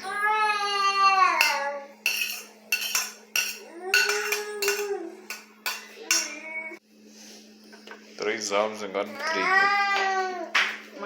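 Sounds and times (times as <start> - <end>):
utensils clinking against dishes: 1.3 - 6.6.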